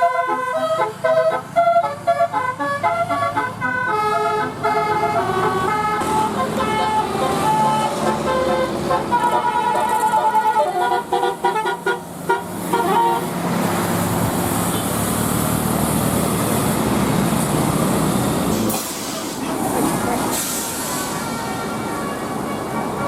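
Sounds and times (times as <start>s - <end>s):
musical air horn tune: 0.0s - 13.4s, 20.0s - 23.0s
engine and road noise: 0.0s - 23.0s.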